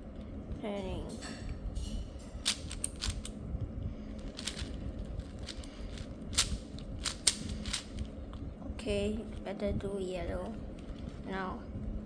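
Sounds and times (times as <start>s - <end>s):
plastic puzzle cube clicking: 4.4s - 4.7s, 5.4s - 7.9s.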